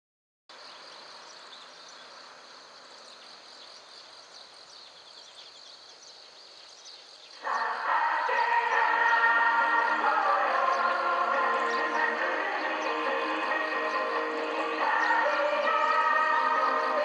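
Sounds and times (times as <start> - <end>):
outdoor background noise: 0.5 - 17.0.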